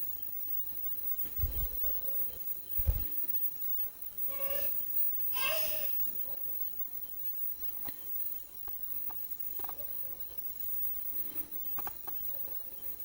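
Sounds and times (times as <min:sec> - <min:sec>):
low steady hiss: 0:00.0 - 0:13.0
faint clicks and taps: 0:11.7 - 0:12.3.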